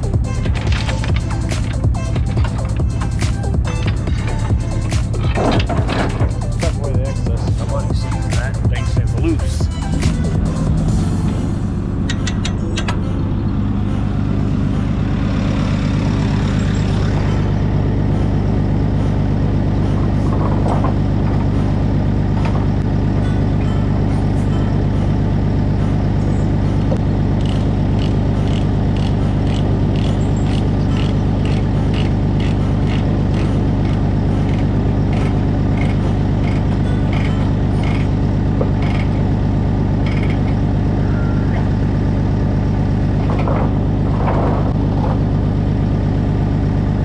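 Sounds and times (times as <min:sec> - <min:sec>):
diesel engine running: 0:00.0 - 0:47.0
regular clicking: 0:00.4 - 0:08.7, 0:27.4 - 0:38.1.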